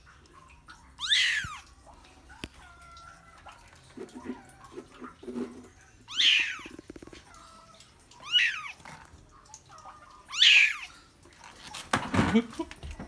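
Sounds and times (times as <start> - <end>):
kitten meowing: 1.0 - 1.7, 6.1 - 8.8, 10.2 - 11.0.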